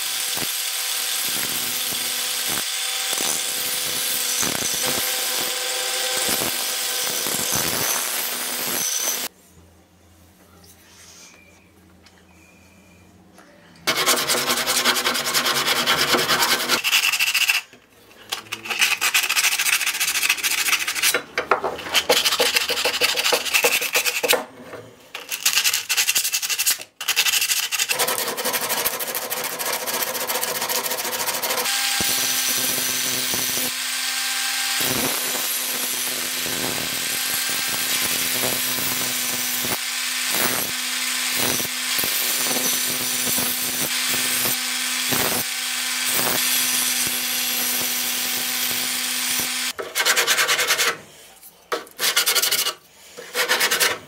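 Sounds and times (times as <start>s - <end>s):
grinder sharpening metal blade: 13.9s - 17.7s, 18.5s - 24.3s, 51.9s - 54.0s.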